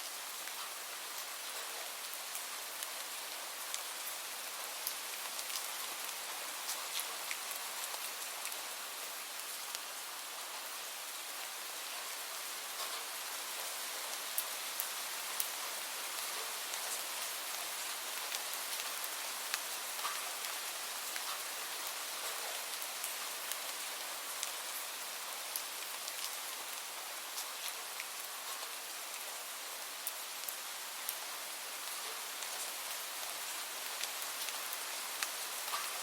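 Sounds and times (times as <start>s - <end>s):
light rain hiss: 0.0s - 36.0s.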